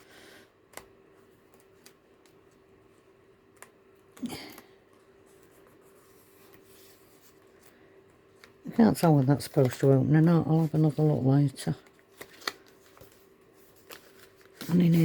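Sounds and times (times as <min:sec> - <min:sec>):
faint steady hum: 0:00.0 - 0:15.0
paper and card rustling: 0:03.5 - 0:15.0.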